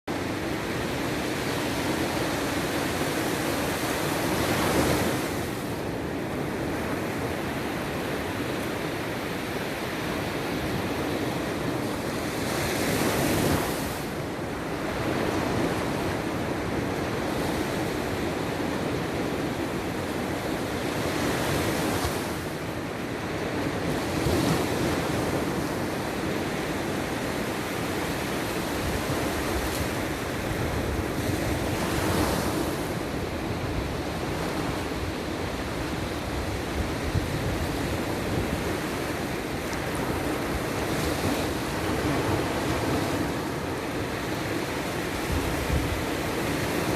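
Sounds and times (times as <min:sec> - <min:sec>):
sea waves breaking on shore: 0:00.1 - 0:46.9
wind buffeting microphone: 0:28.4 - 0:44.3, 0:45.0 - 0:46.9.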